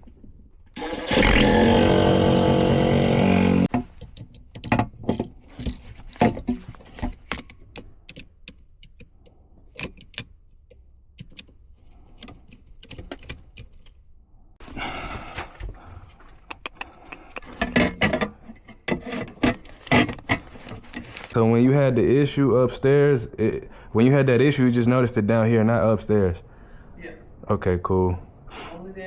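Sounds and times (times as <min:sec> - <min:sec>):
motor hum: 0:00.8 - 0:03.7
handling clicks and knocks: 0:03.7 - 0:14.0.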